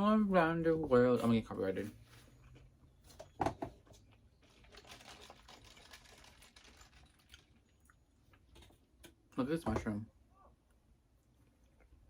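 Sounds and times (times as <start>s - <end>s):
chewing and eating sounds: 11.1s - 12.0s.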